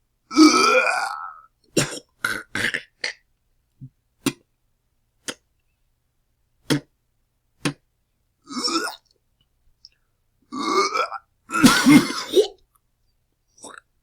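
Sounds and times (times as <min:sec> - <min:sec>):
person retching and gagging: 0:00.3 - 0:03.2, 0:08.5 - 0:09.1, 0:10.6 - 0:12.6, 0:13.6 - 0:13.9.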